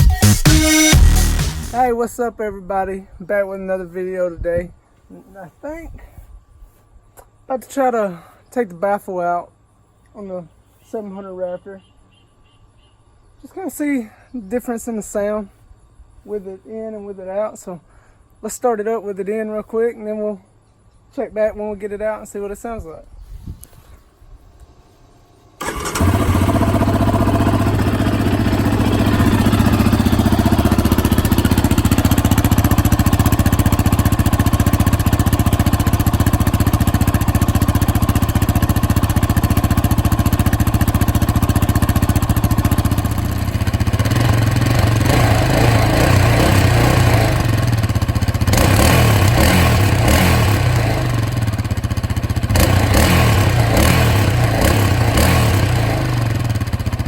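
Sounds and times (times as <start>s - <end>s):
atv engine running: 25.6s - 57.0s.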